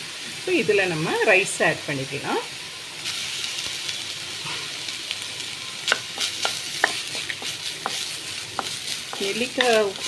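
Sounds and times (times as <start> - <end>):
food sizzling in a pan: 0.0 - 10.0
utensil scraping a pan: 5.9 - 10.0.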